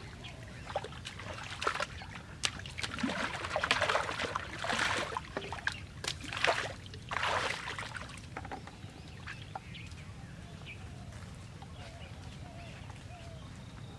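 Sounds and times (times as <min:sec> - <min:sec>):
water splashing and sloshing: 0:00.0 - 0:10.0.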